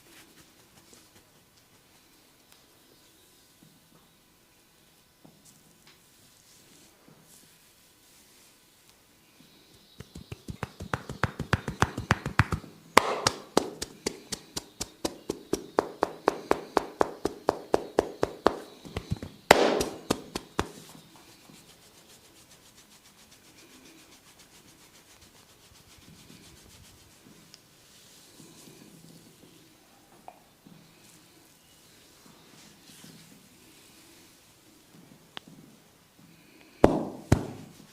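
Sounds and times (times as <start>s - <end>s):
hands tapping and slapping on head: 10.0s - 21.0s, 36.8s - 37.8s
loud smacks: 10.1s - 20.8s, 36.8s - 37.7s.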